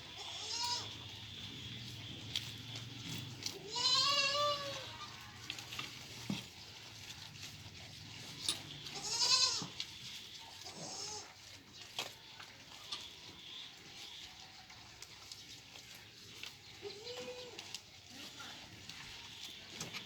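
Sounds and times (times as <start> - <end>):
goats bleating: 0.0 - 1.0, 3.5 - 5.8, 8.8 - 9.8, 10.6 - 11.4, 16.8 - 17.8.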